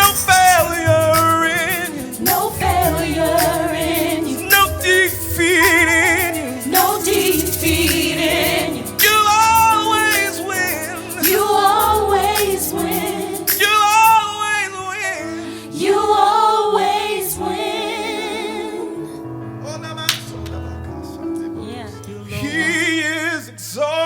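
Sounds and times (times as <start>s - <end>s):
instrumental backing and bass: 0.0s - 13.6s
singer with ornamented phrases: 0.0s - 20.0s, 21.4s - 24.0s.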